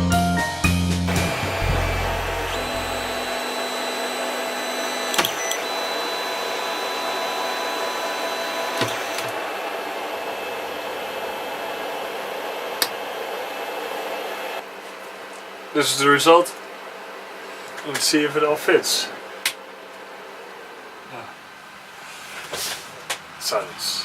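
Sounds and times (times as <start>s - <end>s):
thin motor tones: 1.1s - 11.2s
cooling fans whirring: 1.1s - 22.0s.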